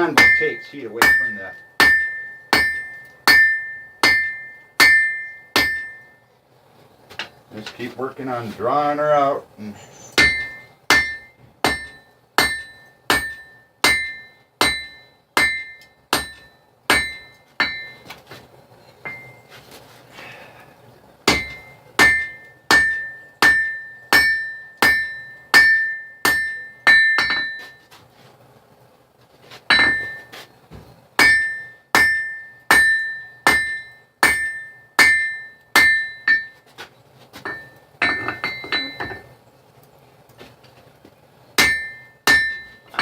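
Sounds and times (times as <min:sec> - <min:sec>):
hammer striking steel on anvil: 0:00.0 - 0:06.2, 0:10.2 - 0:18.1, 0:19.0 - 0:19.4, 0:21.3 - 0:27.8, 0:29.7 - 0:30.3, 0:31.2 - 0:36.6, 0:37.4 - 0:39.3, 0:41.6 - 0:43.0.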